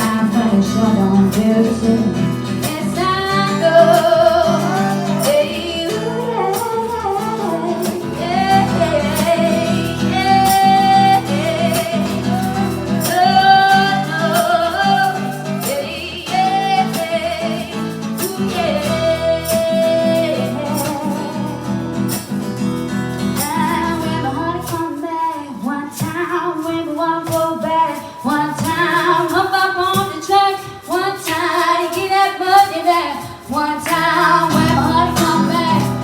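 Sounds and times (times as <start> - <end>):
woman singing long notes: 0.0 - 21.6
strummed acoustic guitar: 0.0 - 36.0.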